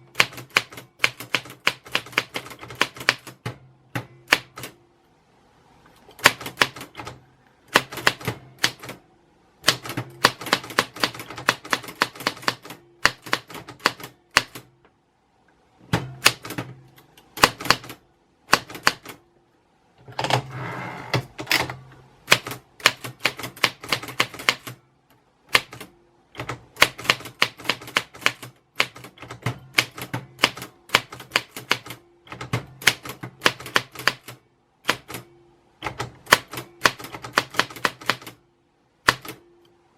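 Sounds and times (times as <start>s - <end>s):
typewriter keys clicking: 0.1s - 3.5s, 6.2s - 9.0s, 9.6s - 14.6s, 22.3s - 24.8s, 25.5s - 35.2s, 35.8s - 38.4s.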